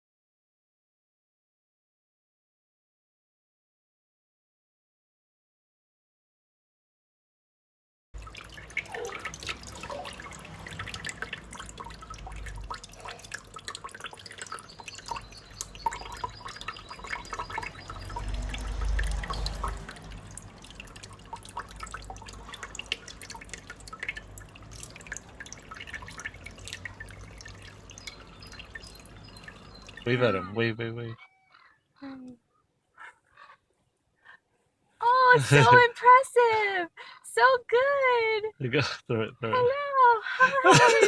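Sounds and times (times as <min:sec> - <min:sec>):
water dripping and splashing: 0:08.2 - 0:30.4.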